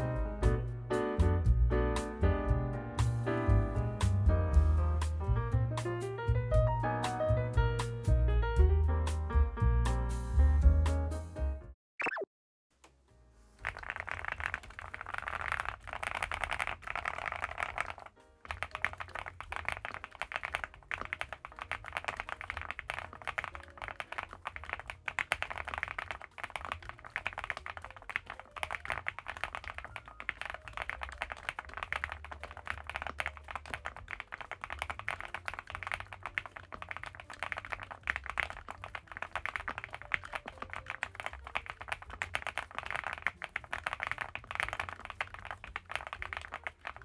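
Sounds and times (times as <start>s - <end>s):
mechanical keyboard typing: 13.6s - 47.0s.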